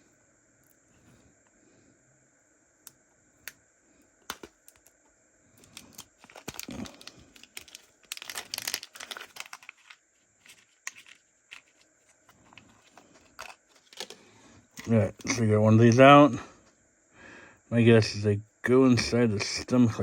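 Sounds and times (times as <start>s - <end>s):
plastic packaging crinkling: 4.3s - 4.9s, 5.6s - 15.3s.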